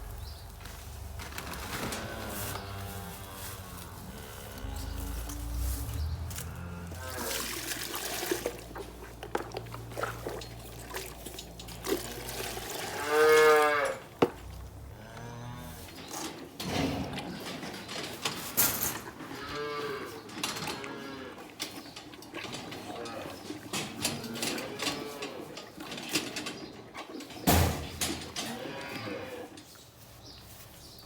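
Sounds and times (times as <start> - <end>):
calves mooing: 0.0 - 10.1, 11.6 - 17.8, 18.6 - 25.9, 28.1 - 29.7
low hum: 0.0 - 10.9.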